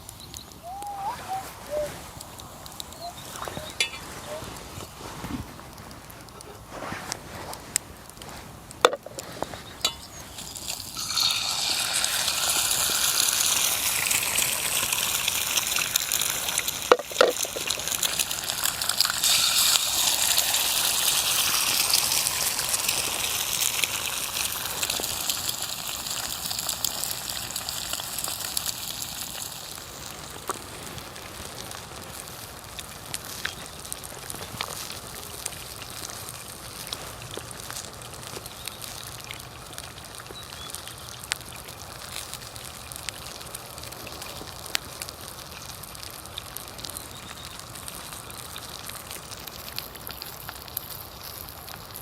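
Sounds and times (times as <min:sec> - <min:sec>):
eggs sizzling in a pan: 0:00.0 - 0:52.0.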